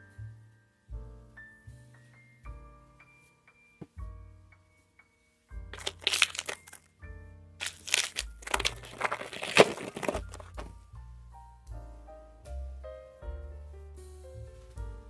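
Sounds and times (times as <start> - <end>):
wrapper crinkling: 5.8 - 6.8, 7.6 - 10.7
soft piano music: 11.5 - 15.0.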